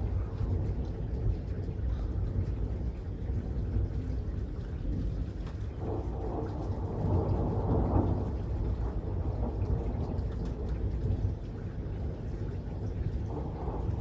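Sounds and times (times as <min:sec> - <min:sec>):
rolling thunder: 0:05.7 - 0:14.0.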